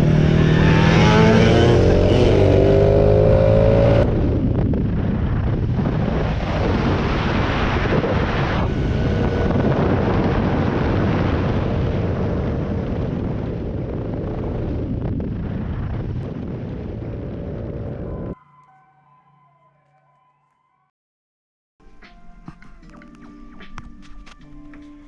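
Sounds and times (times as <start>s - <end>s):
moped engine revving: 0.0s - 4.2s
rough dense rumble: 0.0s - 18.4s.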